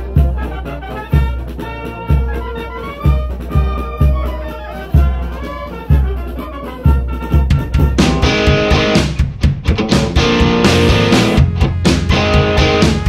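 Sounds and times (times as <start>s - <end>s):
music with deep bass beat: 8.0s - 13.0s.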